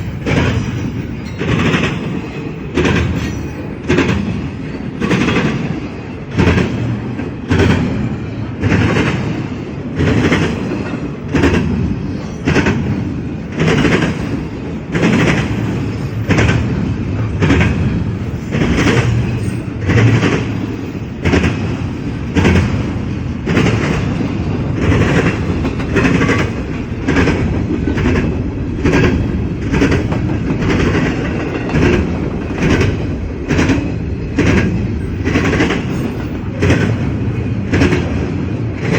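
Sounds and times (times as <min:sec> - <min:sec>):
freight train rumbling past: 0:00.0 - 0:38.9
wheels clicking over rail joints: 0:12.4 - 0:38.9.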